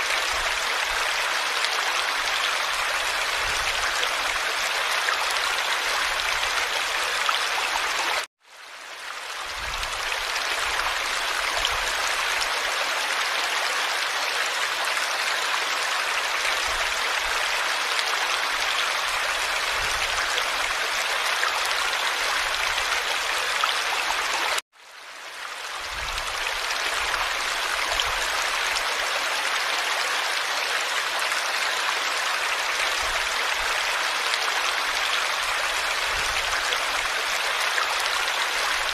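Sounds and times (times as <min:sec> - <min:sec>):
running water rushing: 0:00.0 - 0:38.9.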